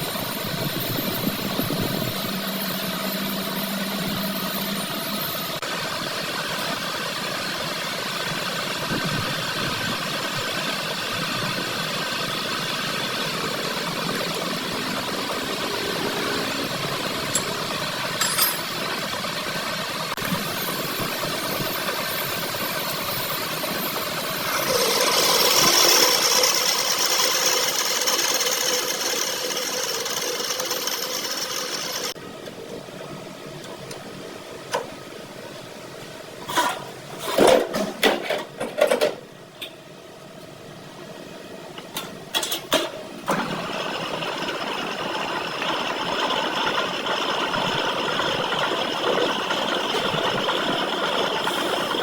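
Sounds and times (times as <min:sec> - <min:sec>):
workshop machinery running: 0:00.0 - 0:39.9, 0:41.0 - 0:52.0
hissing noise: 0:50.0 - 0:52.0.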